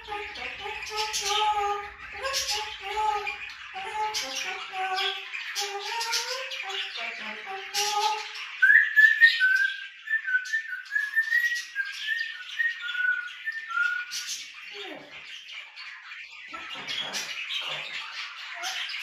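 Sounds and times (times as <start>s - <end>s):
parrot voice-like calls: 0.0s - 8.6s
parrot whistling notes: 0.0s - 14.2s.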